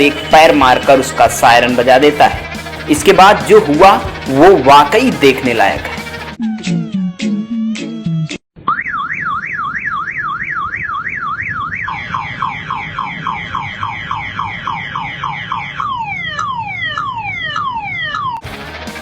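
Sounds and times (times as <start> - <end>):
motorbike alarm siren: 6.3 - 18.5.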